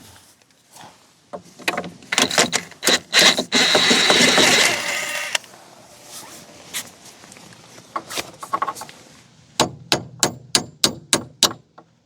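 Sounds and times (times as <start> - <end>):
ratchet wrench clicking: 2.1 - 5.4.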